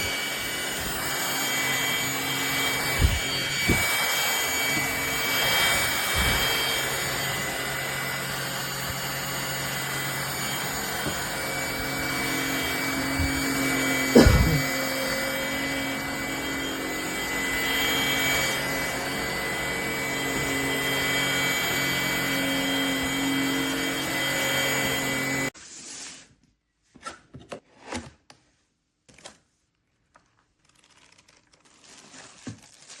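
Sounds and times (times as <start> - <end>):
stick vacuum cleaner running: 0.0 - 25.5.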